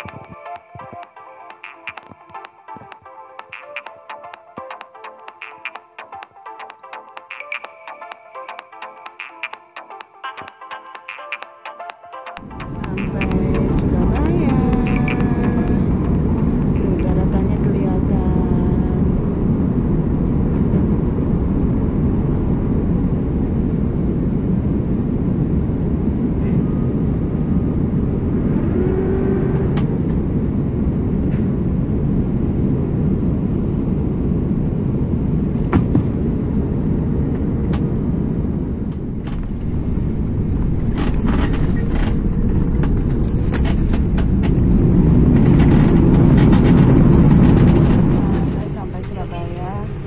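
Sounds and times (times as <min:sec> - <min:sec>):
engine and airflow rumble: 0:12.4 - 0:50.0.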